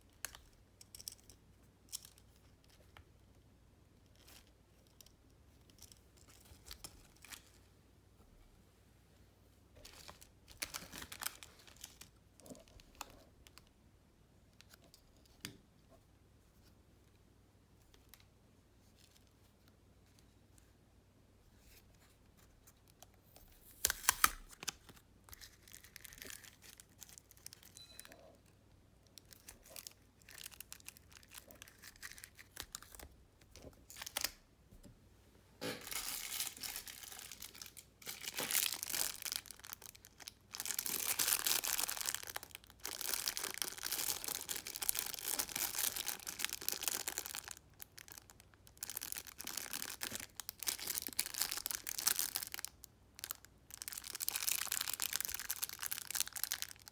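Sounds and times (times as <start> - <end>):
squishy toys crinkling and rustling: 5.5 - 7.6, 9.8 - 13.7, 23.6 - 34.4, 35.8 - 56.9.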